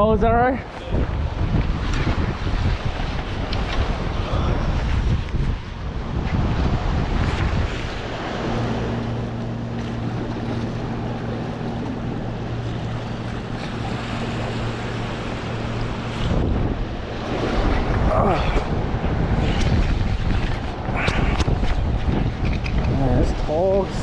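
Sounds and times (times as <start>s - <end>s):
surf washing: 0.0s - 24.0s
wind buffeting microphone: 0.0s - 24.0s
low engine drone: 5.7s - 23.2s.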